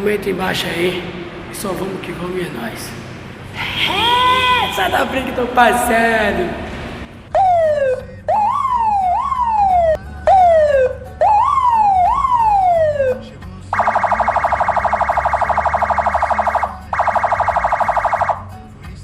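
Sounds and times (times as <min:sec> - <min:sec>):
electronic siren wailing: 0:07.3 - 0:13.2, 0:13.8 - 0:18.4.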